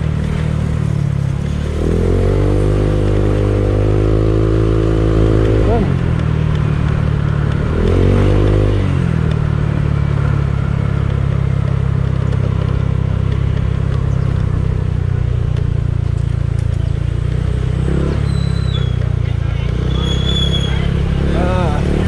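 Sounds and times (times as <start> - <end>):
scooter engine revving and idling: 0.0 - 22.0.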